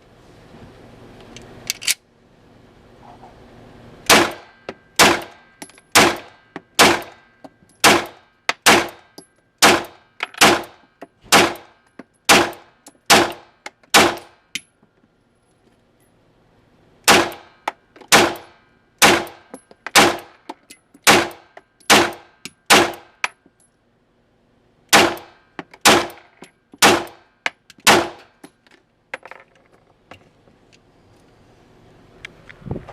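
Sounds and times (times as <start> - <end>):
pistol shots: 4.1 - 5.4, 6.0 - 7.2, 7.8 - 14.4, 17.1 - 20.4, 21.1 - 23.1, 24.9 - 28.3.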